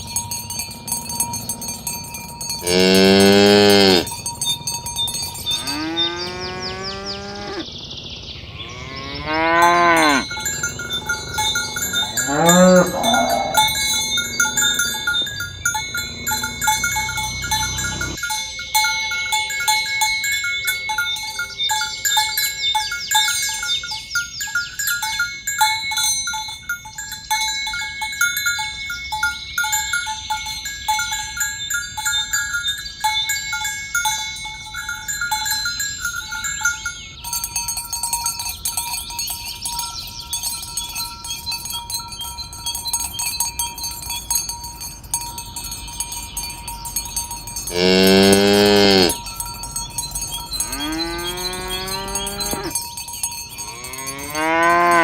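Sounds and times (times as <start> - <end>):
cattle bells clinking: 0.0 - 55.0
cow mooing: 2.6 - 4.1, 5.6 - 7.7, 8.6 - 15.2, 16.0 - 18.2, 47.7 - 49.2, 50.6 - 52.8, 53.7 - 55.0.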